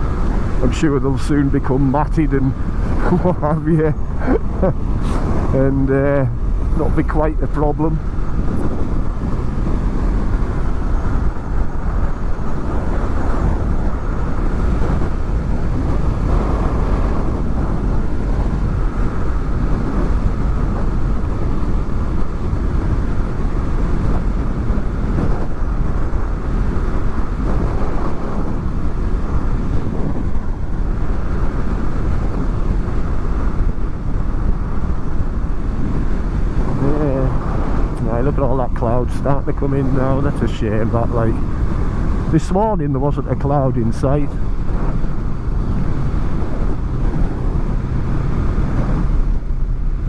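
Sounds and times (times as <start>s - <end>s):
wind rushing: 0.0s - 50.0s
motorcycle engine at speed: 8.0s - 38.0s, 44.4s - 50.0s.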